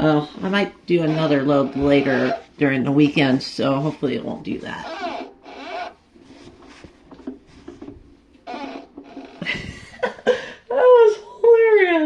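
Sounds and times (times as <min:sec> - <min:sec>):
rubber door seal squeaking: 0:00.4 - 0:02.6, 0:04.8 - 0:06.1, 0:08.4 - 0:09.6.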